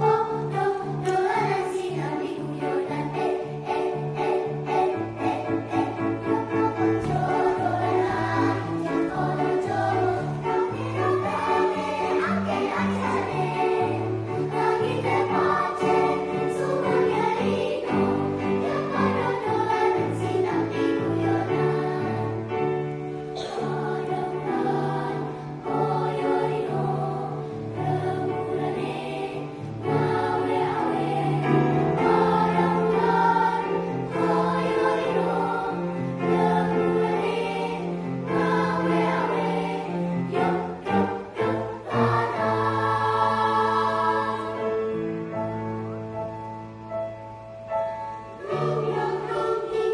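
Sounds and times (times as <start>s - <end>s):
choir singing in parts: 0.0s - 45.9s, 47.8s - 49.9s.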